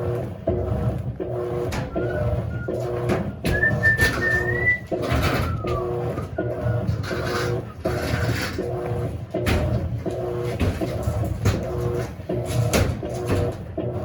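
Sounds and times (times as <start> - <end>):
washing machine motor humming: 0.0 - 14.0
high whistling tone: 3.5 - 6.8.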